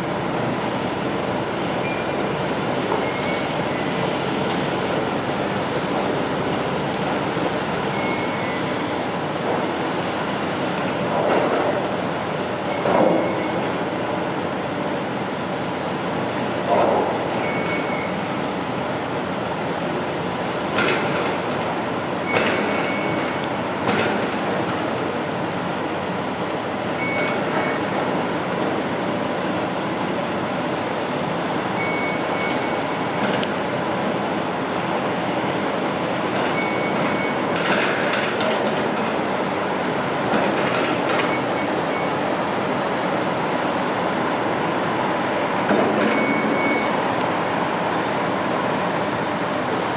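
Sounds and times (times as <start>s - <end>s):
heavy construction machinery running: 0.0s - 49.9s
short high beep: 46.1s - 47.0s.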